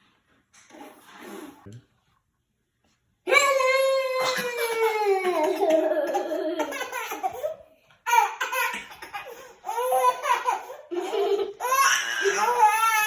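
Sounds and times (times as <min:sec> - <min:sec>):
child laughing: 0:04.1 - 0:13.0.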